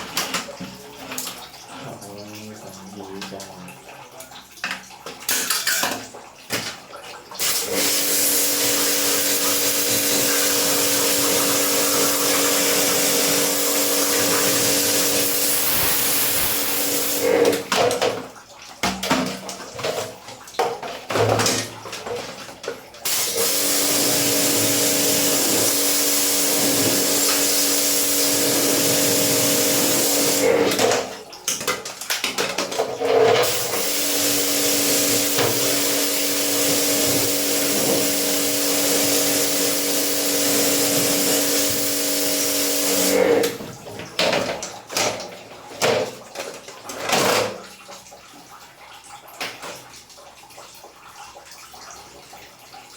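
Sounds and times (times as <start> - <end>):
water splashing and dripping: 0.0 - 52.9
pressure washer spraying water: 7.4 - 17.5, 23.1 - 30.5, 33.4 - 43.3.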